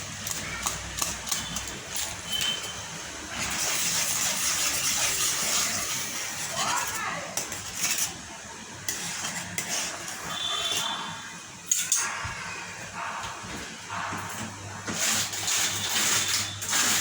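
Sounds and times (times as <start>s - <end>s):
utensils clinking against a pot: 0.1s - 12.2s.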